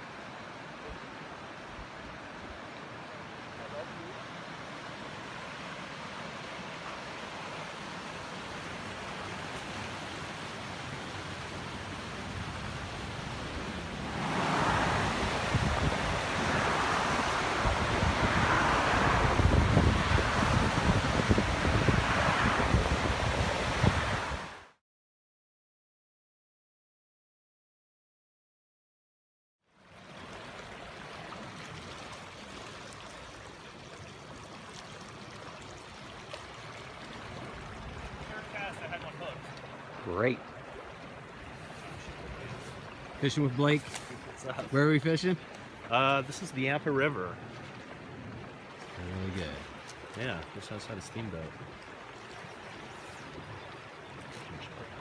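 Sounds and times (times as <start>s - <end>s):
river water rushing: 0.0s - 24.8s, 29.8s - 55.0s
wind buffeting microphone: 12.4s - 24.6s, 37.2s - 38.6s
steady rushing noise: 13.3s - 24.5s.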